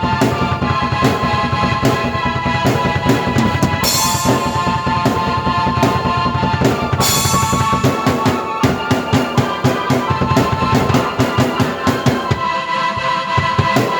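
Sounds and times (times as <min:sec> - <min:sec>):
drum beat: 0:00.0 - 0:13.9
sustained keyboard chords: 0:00.0 - 0:13.9
cymbal crash: 0:03.2 - 0:10.2.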